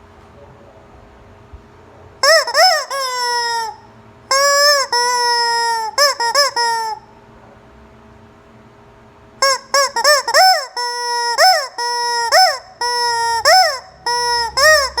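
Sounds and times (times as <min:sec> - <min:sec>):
rubber chicken toy squawking: 0:02.2 - 0:07.1, 0:09.4 - 0:15.0.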